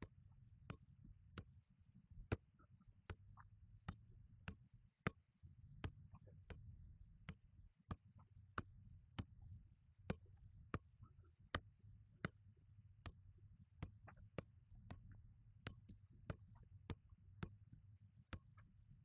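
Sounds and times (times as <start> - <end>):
ball taps from juggling: 3.9 - 5.2.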